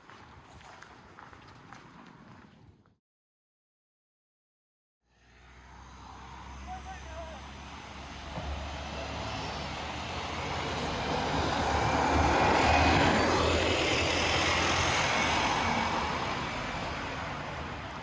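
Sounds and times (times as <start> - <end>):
motor vehicle passing by: 5.1 - 18.0.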